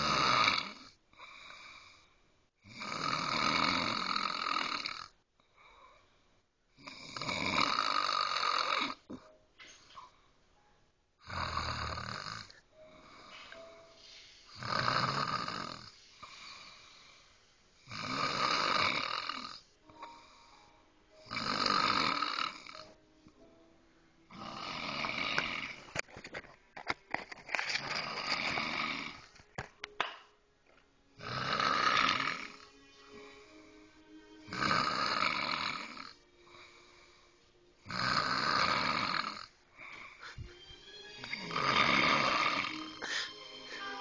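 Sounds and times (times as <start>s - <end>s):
woman snoring loudly: 0.0s - 1.0s, 2.6s - 5.2s, 6.8s - 9.2s, 11.2s - 13.1s, 14.5s - 16.8s, 17.8s - 19.7s, 21.2s - 23.0s, 24.3s - 25.9s, 28.0s - 29.3s, 31.2s - 33.6s, 34.4s - 36.8s, 37.8s - 40.0s, 41.2s - 44.0s
quiet breathing: 0.8s - 2.7s, 5.0s - 7.0s, 8.9s - 10.7s, 12.0s - 18.2s, 19.4s - 26.0s, 31.2s - 38.1s, 39.2s - 44.0s.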